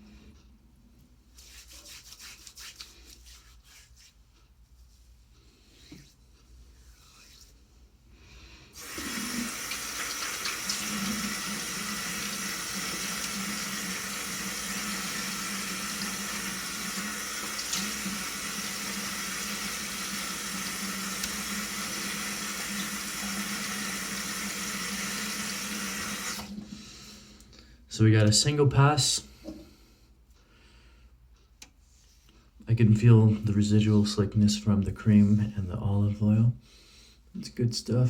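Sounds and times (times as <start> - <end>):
tap water running: 8.8 - 26.8.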